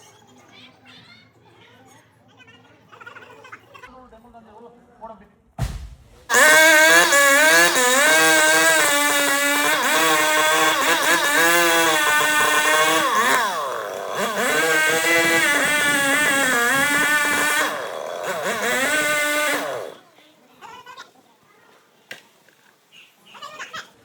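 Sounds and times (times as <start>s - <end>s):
chainsaw cutting wood: 6.3s - 20.1s.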